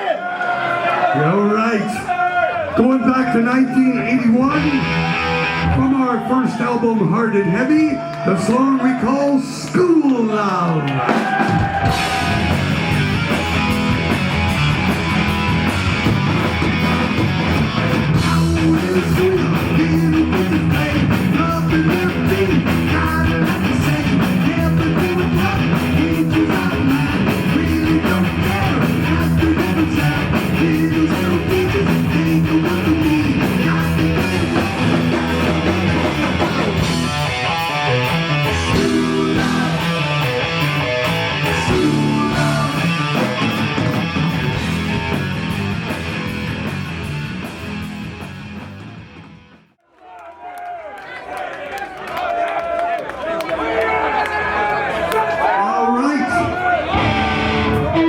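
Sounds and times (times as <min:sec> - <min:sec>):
heavy metal band playing live: 0:04.4 - 0:06.2, 0:11.1 - 0:49.6, 0:56.9 - 0:58.0
fast drum and cymbal beat: 0:11.1 - 0:37.3.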